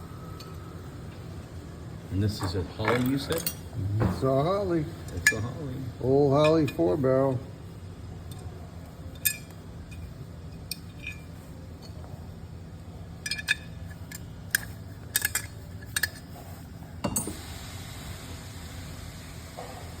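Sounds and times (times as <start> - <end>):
steady low hum: 0.0 - 20.0
metal parts and tools clinking: 2.4 - 3.7, 9.1 - 12.1, 13.2 - 17.4.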